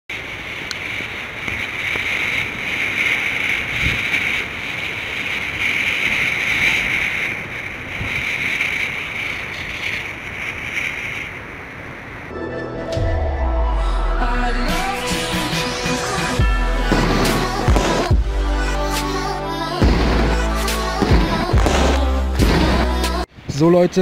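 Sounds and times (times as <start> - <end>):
steady loud hiss: 0.1 - 12.3.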